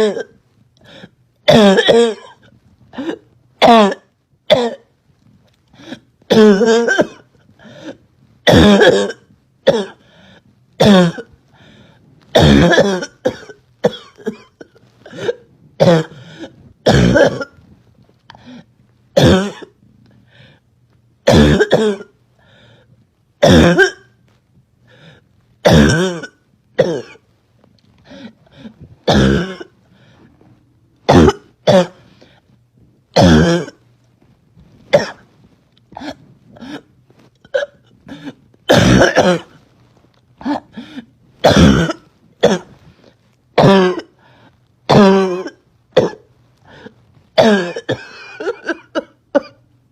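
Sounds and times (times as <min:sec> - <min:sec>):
catches of breath: 0:05.7 - 0:06.1, 0:07.5 - 0:08.0, 0:10.0 - 0:10.6, 0:11.5 - 0:12.3, 0:16.1 - 0:16.8, 0:20.1 - 0:20.7, 0:22.4 - 0:23.0, 0:24.9 - 0:25.4, 0:28.0 - 0:28.9, 0:29.8 - 0:30.5, 0:40.4 - 0:41.2, 0:44.2 - 0:44.6, 0:46.6 - 0:47.2
girl's barking cough: 0:16.8 - 0:17.6, 0:31.1 - 0:32.0, 0:37.5 - 0:39.5, 0:41.4 - 0:42.8, 0:43.6 - 0:44.2, 0:44.9 - 0:46.3, 0:47.4 - 0:49.6.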